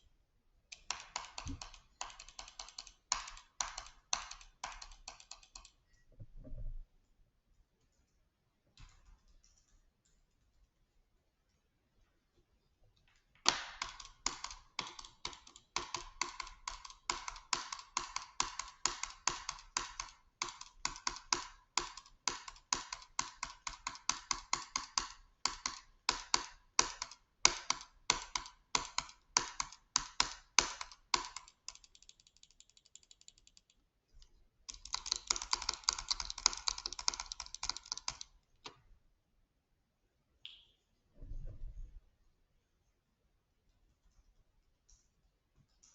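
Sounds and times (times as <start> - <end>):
typing clicks: 0.7 - 5.9, 13.4 - 33.8, 34.7 - 38.4.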